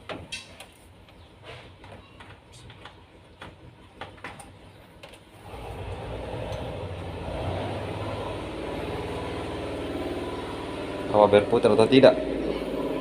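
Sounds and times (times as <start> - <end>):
washing machine motor humming: 5.4 - 13.0.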